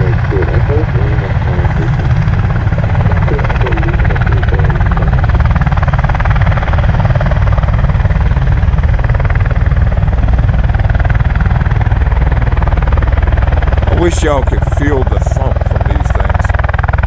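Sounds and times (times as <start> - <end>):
turbine noise: 0.0 - 17.0.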